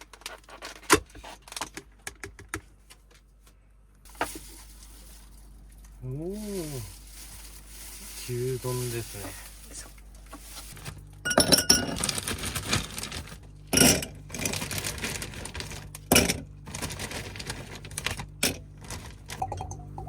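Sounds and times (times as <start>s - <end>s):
tableware clinking: 11.3s - 12.0s.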